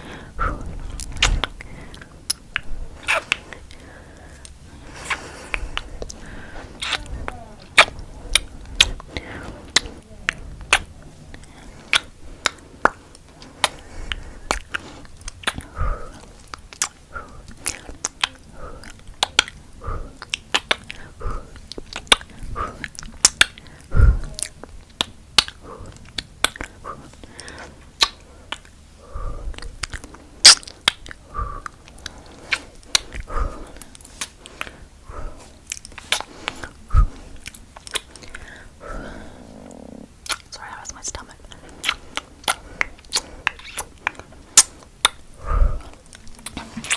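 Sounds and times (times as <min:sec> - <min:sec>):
wet kissing lip smacks: 0:02.5 - 0:03.6, 0:06.8 - 0:07.1, 0:07.8 - 0:09.0, 0:14.5 - 0:15.7, 0:41.8 - 0:45.2.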